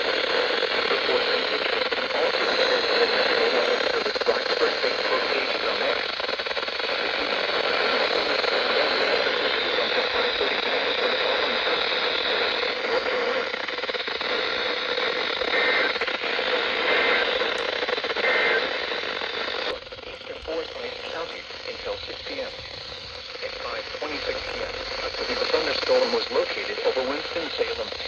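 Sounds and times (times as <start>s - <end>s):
radio static hiss: 0.0s - 28.0s
faint short data bursts: 10.0s - 28.0s.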